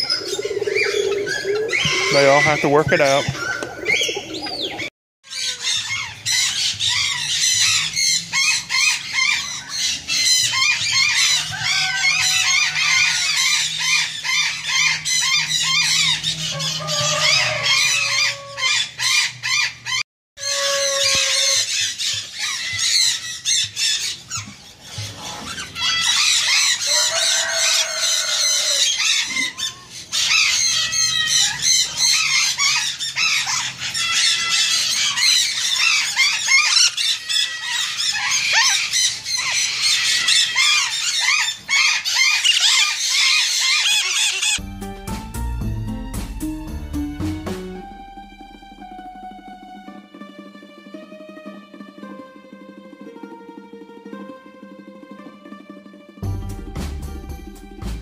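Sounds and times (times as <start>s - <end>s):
high bird chirps: 0.0s - 11.1s
bird squawks: 0.0s - 44.6s.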